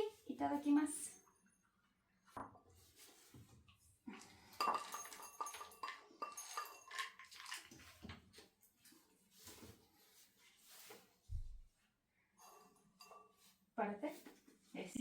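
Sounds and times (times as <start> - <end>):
clicks and clinks of handling: 4.2 - 9.6.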